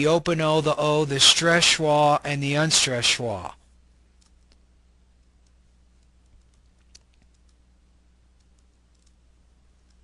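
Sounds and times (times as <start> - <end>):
faint clicks: 4.2 - 4.6, 5.4 - 7.6, 8.4 - 9.2.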